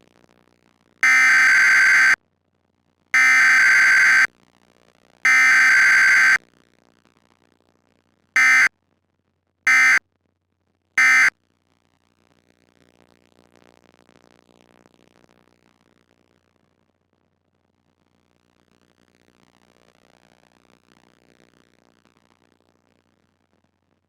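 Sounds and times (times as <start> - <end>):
screeching digital data bursts: 1.0 - 2.2, 3.2 - 4.3, 5.3 - 6.4, 8.4 - 8.7, 9.7 - 10.0.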